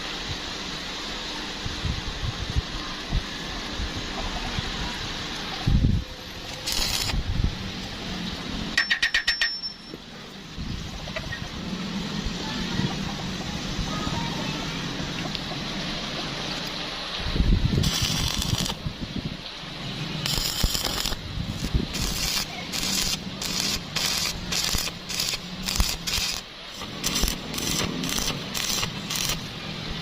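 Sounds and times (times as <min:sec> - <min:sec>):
crackling welding arc: 0:06.3 - 0:07.2, 0:17.7 - 0:18.9, 0:20.2 - 0:29.6.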